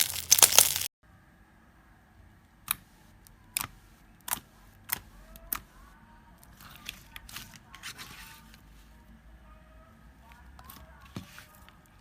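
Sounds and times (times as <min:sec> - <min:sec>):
slime crackling: 0:00.0 - 0:00.9.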